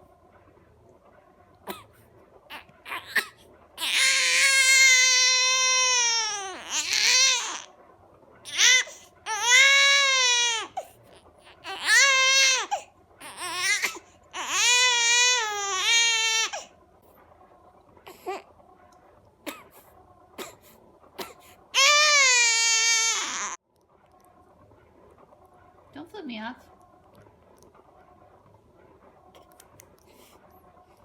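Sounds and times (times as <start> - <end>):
baby crying: 2.5 - 7.7, 8.5 - 16.7, 21.8 - 23.6.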